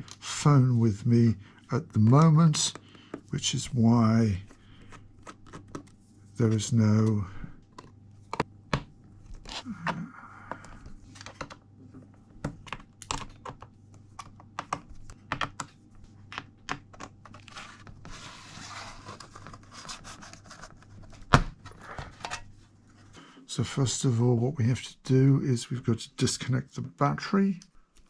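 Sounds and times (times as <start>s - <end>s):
faint steady hum: 0.0s - 28.0s.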